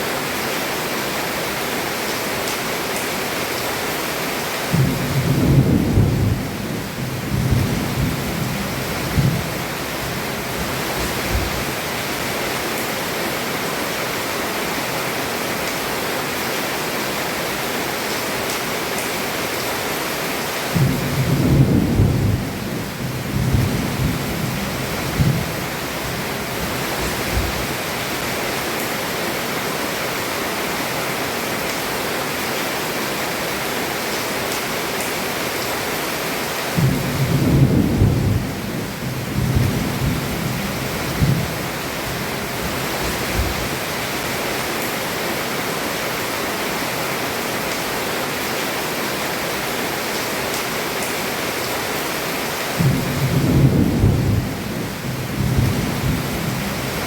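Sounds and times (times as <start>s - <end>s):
heavy rain on a roof: 0.0s - 57.0s
rolling thunder: 4.7s - 11.6s, 20.7s - 27.6s, 36.8s - 43.8s, 52.8s - 57.0s.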